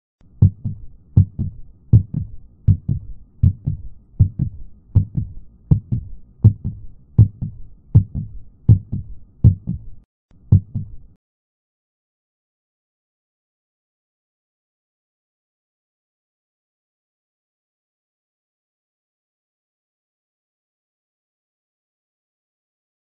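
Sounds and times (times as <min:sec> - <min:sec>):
heartbeat lub-dub thumps: 0:00.4 - 0:11.2.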